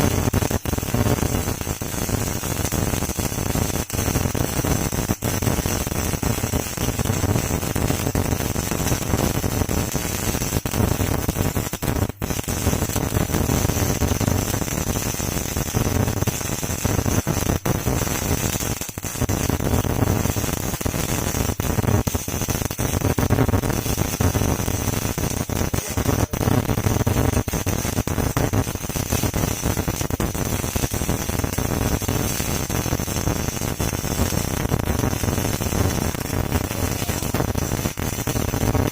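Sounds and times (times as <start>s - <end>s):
welding arc crackling: 0.0s - 38.9s.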